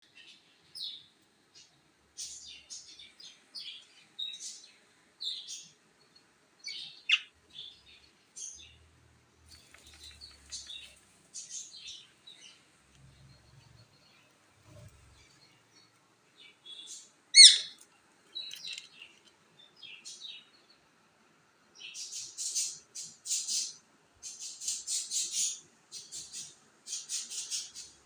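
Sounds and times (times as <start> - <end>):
parrot chirping and squawking: 6.7 - 7.3, 17.3 - 17.8.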